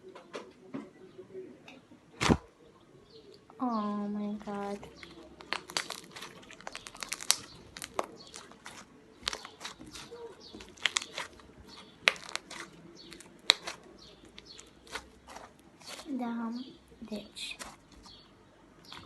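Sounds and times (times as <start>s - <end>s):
slime clicking and popping: 4.6s - 16.0s.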